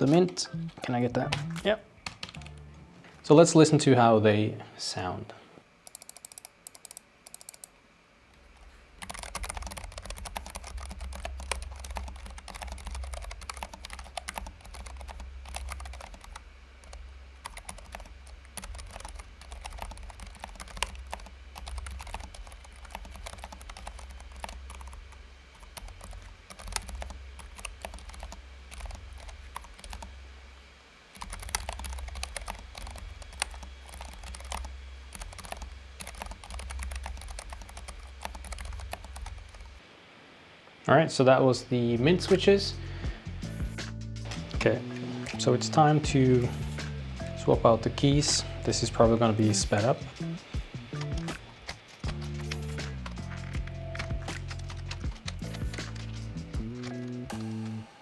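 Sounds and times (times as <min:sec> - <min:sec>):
keyboard key clicks: 0:00.0 - 0:02.6, 0:05.9 - 0:07.8.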